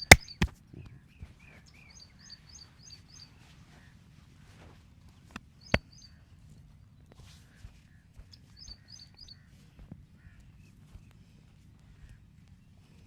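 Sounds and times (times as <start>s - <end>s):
sharp crack: 0.0s - 0.5s.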